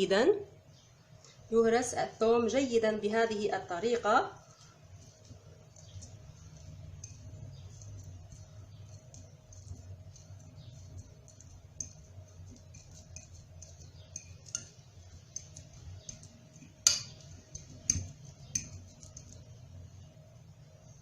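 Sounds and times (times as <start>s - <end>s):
utensil tapping against bowl: 4.5s - 19.5s.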